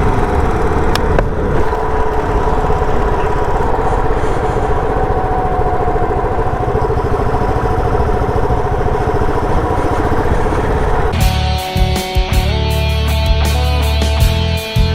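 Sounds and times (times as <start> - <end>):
motorcycle engine running: 0.0 - 14.9
guitar-led music: 7.6 - 14.9.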